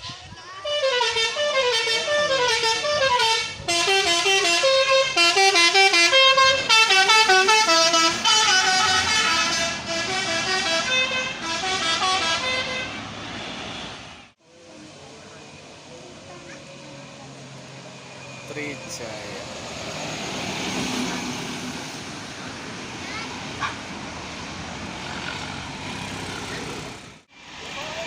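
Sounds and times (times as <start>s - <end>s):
air horns playing a quick tune: 0.7s - 13.0s.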